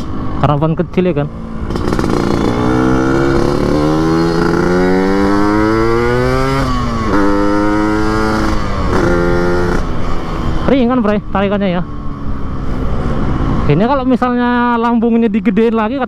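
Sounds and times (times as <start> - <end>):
raspy two-stroke motorcycle engine: 1.4 - 11.2.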